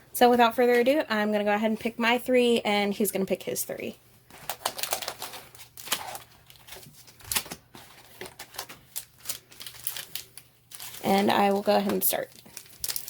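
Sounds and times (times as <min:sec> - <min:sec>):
foil packs crinkling: 0:04.4 - 0:13.0.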